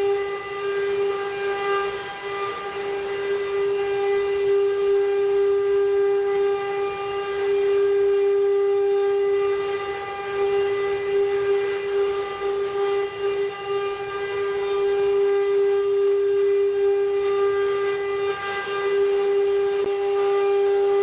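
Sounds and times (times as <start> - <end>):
router motors high-pitched whine: 0.0 - 21.0.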